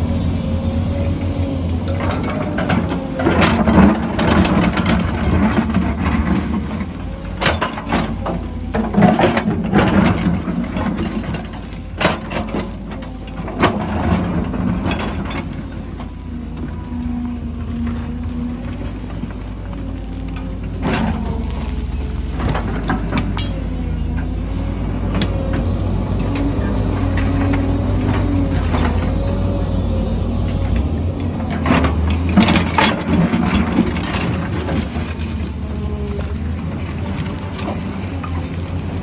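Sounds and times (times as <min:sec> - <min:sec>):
excavator diesel engine running: 0:00.0 - 0:39.0.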